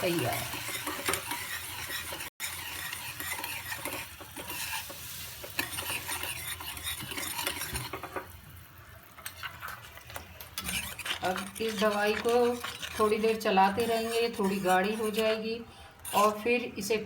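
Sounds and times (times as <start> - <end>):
spoon scraping a pan: 0.0 - 8.4, 9.0 - 16.5
light sizzle from hot pan: 0.0 - 11.1.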